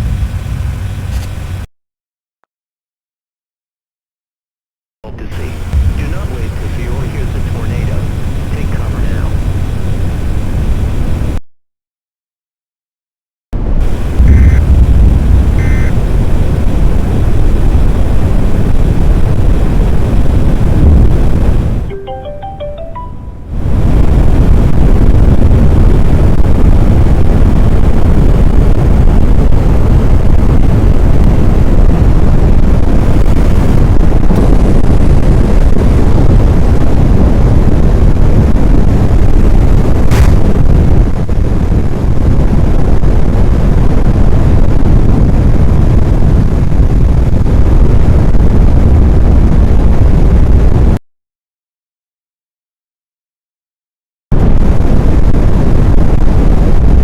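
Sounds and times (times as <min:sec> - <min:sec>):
wind buffeting microphone: 0:05.4 - 0:11.4, 0:13.6 - 0:21.9, 0:23.5 - 0:51.0, 0:54.4 - 0:57.0.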